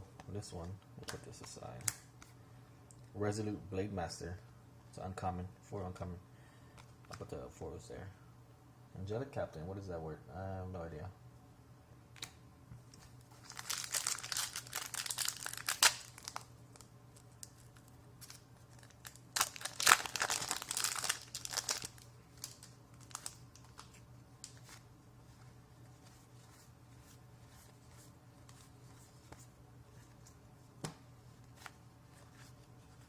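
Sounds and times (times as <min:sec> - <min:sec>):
foil wrapper crinkling and tearing: 0:13.4 - 0:24.8.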